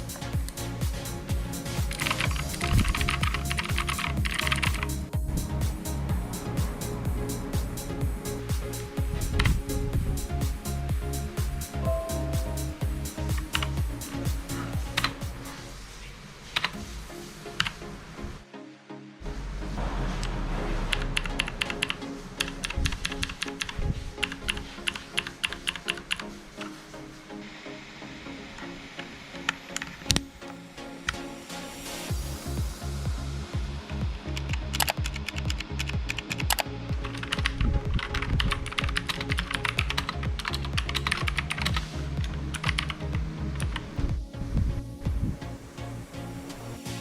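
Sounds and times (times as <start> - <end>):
background music: 0.0 - 47.0
mechanical keyboard typing: 1.9 - 4.8, 34.7 - 42.9.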